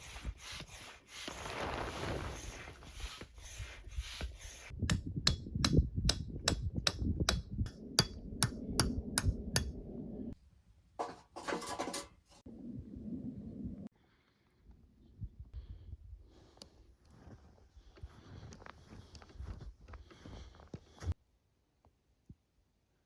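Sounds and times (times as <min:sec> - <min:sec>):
short rustling bursts: 0:00.0 - 0:04.7.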